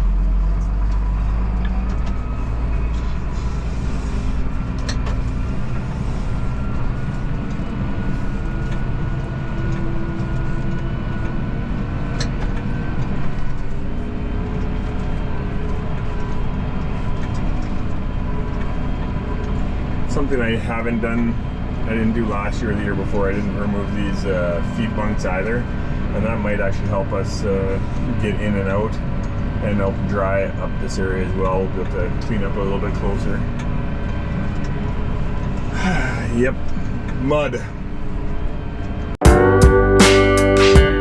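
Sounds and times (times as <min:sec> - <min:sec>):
tractor engine droning: 0:00.0 - 0:29.8.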